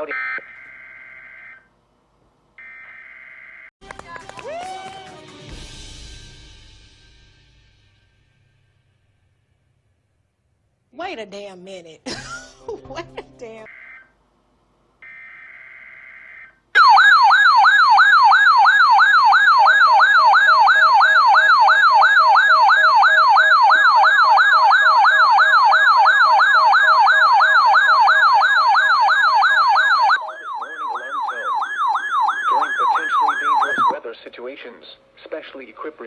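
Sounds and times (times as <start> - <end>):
warbling electronic siren alarm: 0.0 - 1.7, 2.6 - 3.7, 13.7 - 14.1, 15.0 - 34.0
digital header tones: 30.2 - 34.0.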